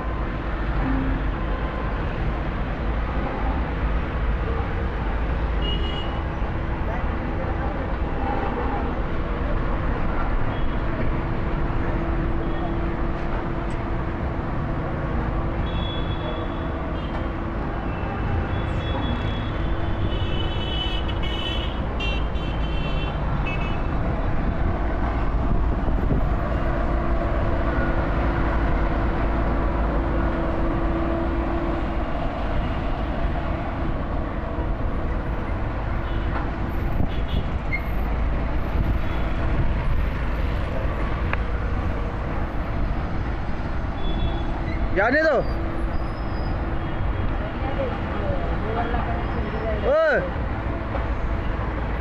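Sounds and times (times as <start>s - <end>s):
road roller diesel engine rumble: 24.0s - 36.6s.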